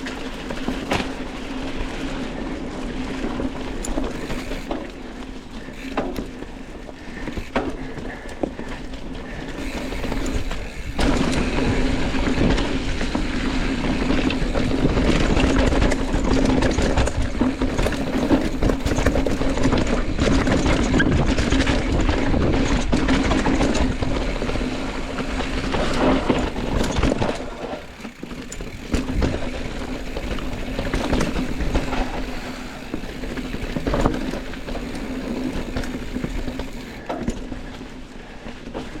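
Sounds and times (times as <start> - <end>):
bike rattling over bumps: 0.0 - 39.0
rushing wind noise: 9.3 - 37.0.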